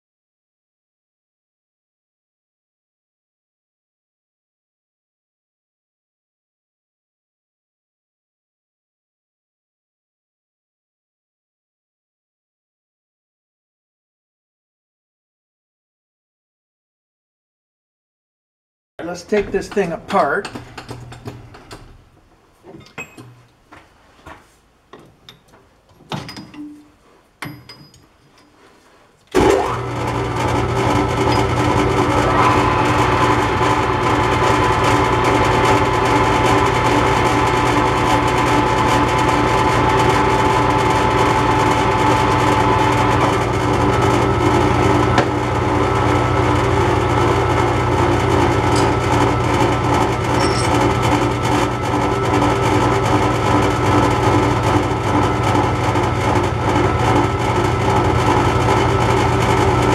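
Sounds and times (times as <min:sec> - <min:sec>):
metal tools clicking and knocking: 0:22.8 - 0:23.4, 0:24.9 - 0:28.6, 0:50.4 - 0:50.8
metal lathe running: 0:29.4 - 0:59.9.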